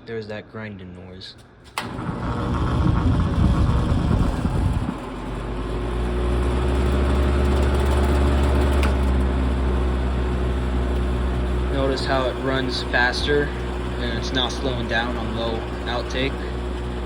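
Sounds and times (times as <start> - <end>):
box fan motor grinding: 1.8 - 17.0.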